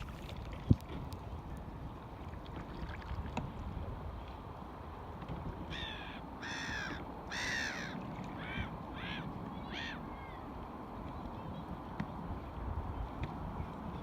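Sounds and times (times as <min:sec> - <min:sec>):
wind and water rushing: 0:00.0 - 0:14.0
bird calling: 0:05.7 - 0:10.5.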